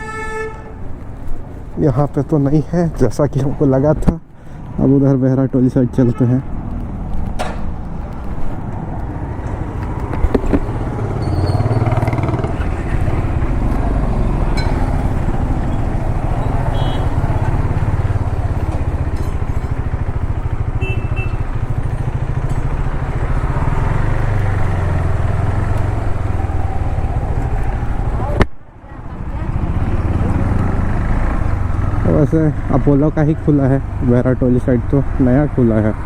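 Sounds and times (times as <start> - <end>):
motorcycle engine running: 9.8 - 26.3.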